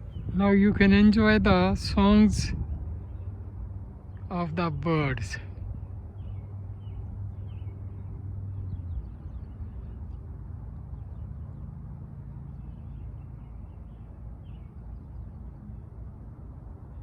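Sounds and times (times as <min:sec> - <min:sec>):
steady low rumble: 0:00.0 - 0:17.0
small birds chirping: 0:04.0 - 0:11.8, 0:12.5 - 0:15.5.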